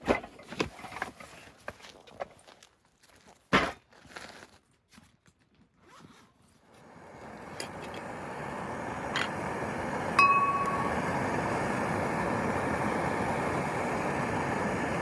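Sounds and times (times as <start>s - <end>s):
outdoor hiss: 6.7s - 15.0s.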